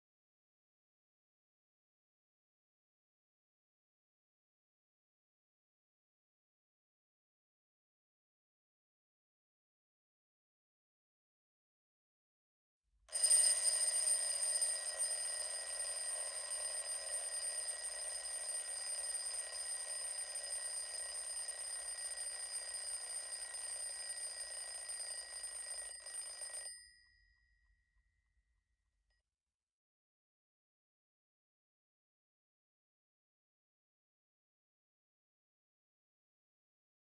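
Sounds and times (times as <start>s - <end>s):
alarm clock ringing: 13.1s - 27.4s.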